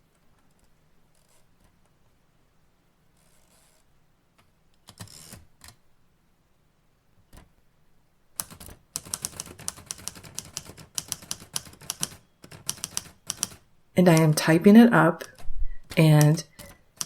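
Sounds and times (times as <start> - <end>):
rapid typewriter typing: 8.4 - 14.5, 15.2 - 17.0.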